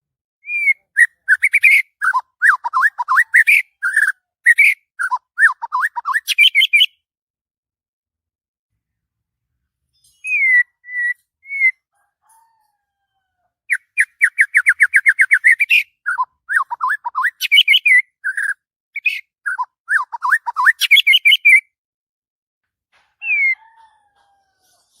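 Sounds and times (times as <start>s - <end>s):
bird singing whistles and warbles: 0.4s - 7.0s, 10.1s - 11.8s, 13.7s - 21.7s, 23.2s - 23.8s.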